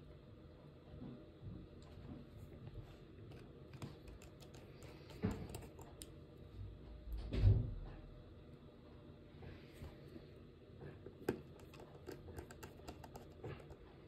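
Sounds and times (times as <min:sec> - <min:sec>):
light clicks and taps: 0:03.3 - 0:06.2, 0:10.9 - 0:14.0.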